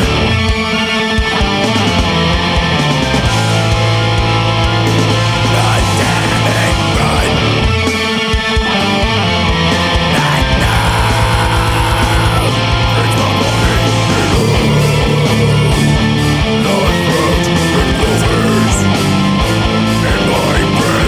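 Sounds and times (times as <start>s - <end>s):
death metal music: 0.0s - 21.0s.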